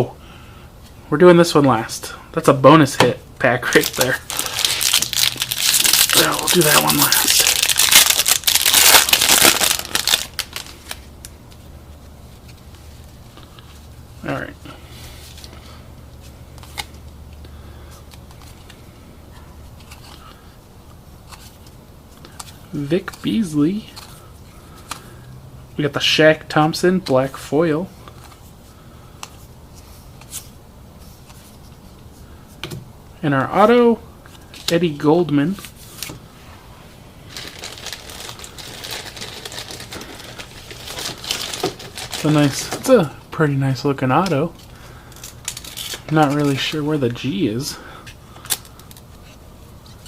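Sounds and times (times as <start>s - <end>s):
steady low hum: 0.0s - 50.0s
cards rustling and ticking: 3.0s - 11.7s, 37.3s - 43.0s, 44.2s - 47.3s, 48.0s - 50.0s
cards being flipped through: 16.5s - 17.1s.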